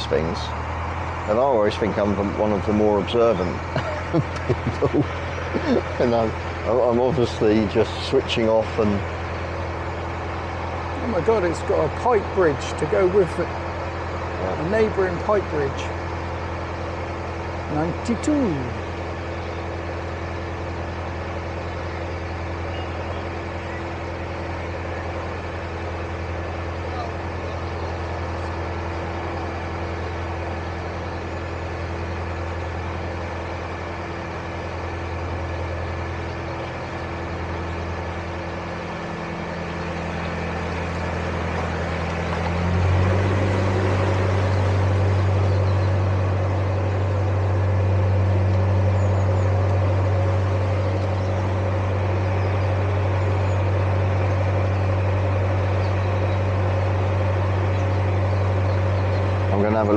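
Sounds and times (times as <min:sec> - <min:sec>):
boat diesel engine running: 0:00.0 - 0:59.9.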